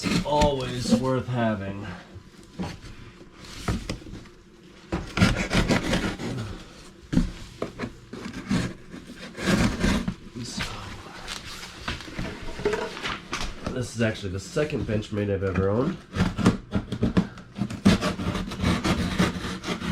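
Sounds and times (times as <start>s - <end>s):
knife slicing cardboard and tape: 5.0s - 6.4s, 8.1s - 10.1s, 16.1s - 19.9s.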